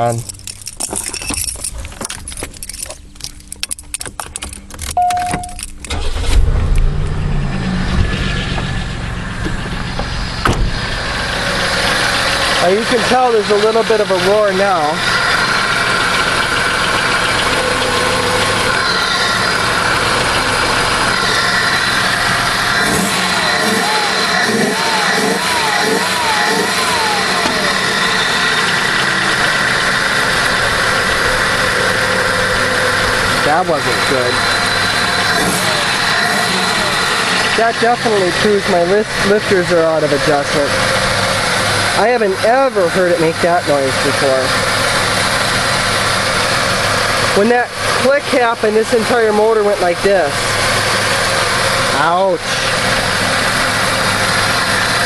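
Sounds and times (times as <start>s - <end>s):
keys rattling and clicking: 0.0s - 6.0s
car engine starting and roaring: 0.0s - 55.0s
short beep: 5.0s - 6.1s.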